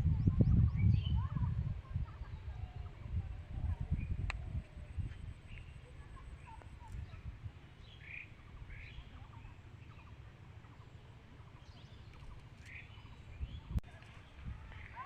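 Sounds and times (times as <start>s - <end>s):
low rumble: 0.0s - 5.5s
birds chirping: 0.0s - 15.0s.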